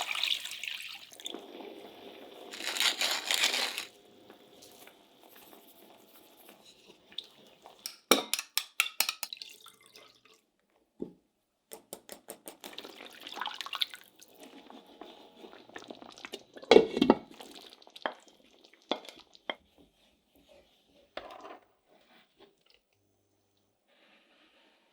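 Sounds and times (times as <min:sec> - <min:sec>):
utensils and dishes clicking: 0:07.9 - 0:09.4.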